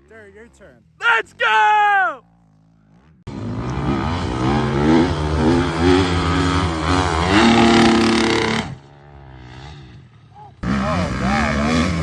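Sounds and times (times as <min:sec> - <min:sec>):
dirt bike engine revving: 0:03.3 - 0:09.9, 0:10.6 - 0:12.0.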